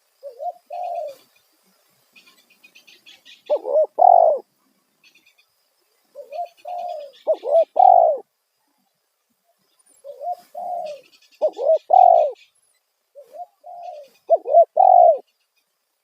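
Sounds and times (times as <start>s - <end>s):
dove cooing: 0.2s - 1.3s, 3.5s - 4.5s, 6.1s - 8.3s, 10.0s - 12.4s, 13.2s - 15.3s.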